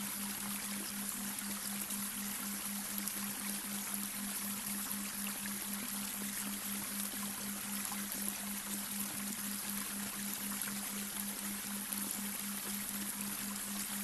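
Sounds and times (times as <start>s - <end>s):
brook water running: 0.0s - 14.0s.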